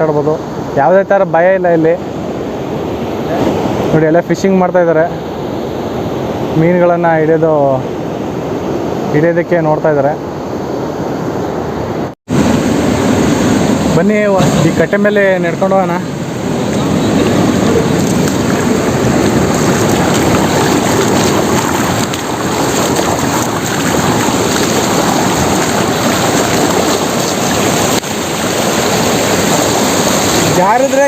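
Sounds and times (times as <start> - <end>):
river water rushing over dam: 12.4 - 31.0.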